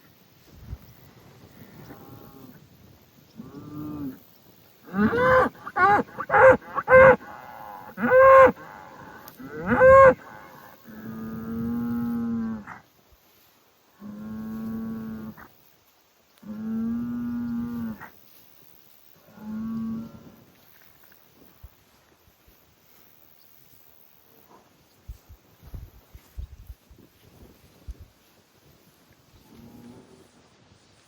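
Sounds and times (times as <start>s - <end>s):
cattle bellowing: 4.9s - 11.1s.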